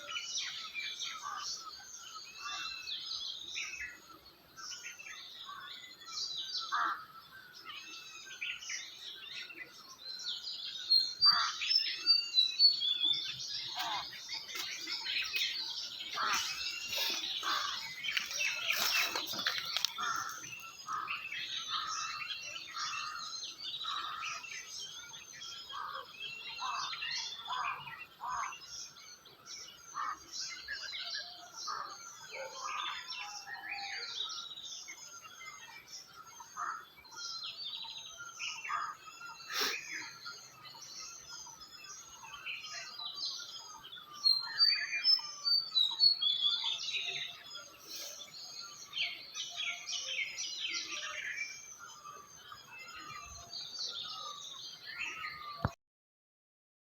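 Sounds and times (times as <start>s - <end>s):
birds chirping in chorus: 0.0s - 55.8s.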